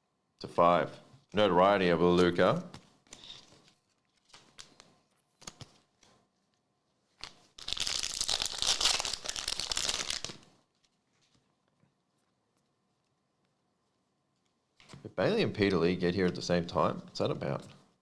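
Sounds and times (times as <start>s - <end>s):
wrapper tearing and crinkling: 7.2s - 10.8s.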